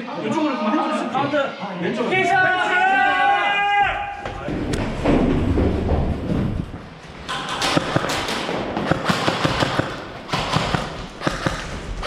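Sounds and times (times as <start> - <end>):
airsoft guns shooting: 7.3 - 12.0
pellets striking hard surfaces: 7.3 - 12.0.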